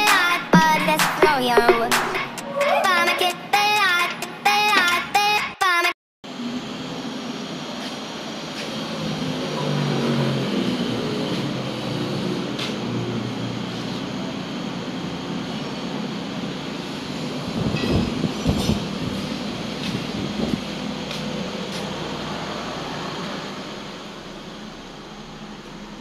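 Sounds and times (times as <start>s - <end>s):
steady mechanical drone: 6.3s - 26.0s.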